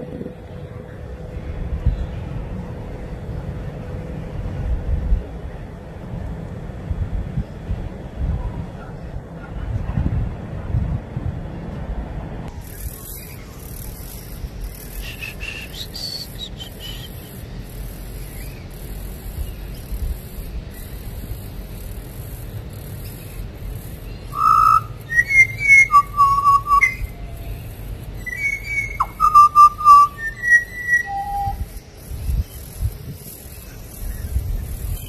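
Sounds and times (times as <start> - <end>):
steady background noise: 0.0 - 35.0
whistle-like melody: 24.4 - 27.1, 28.3 - 31.6.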